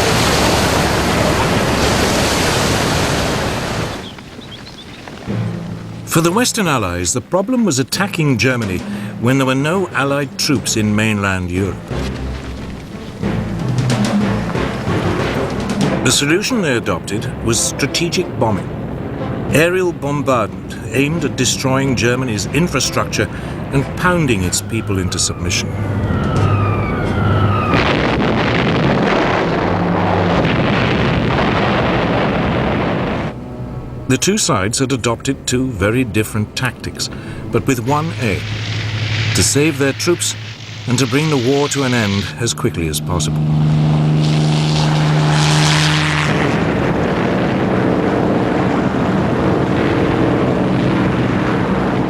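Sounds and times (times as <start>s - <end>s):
propeller aircraft engines humming: 0.0s - 52.0s
falling bomb whistle: 25.7s - 28.7s
loud bomb explosion: 26.0s - 33.3s.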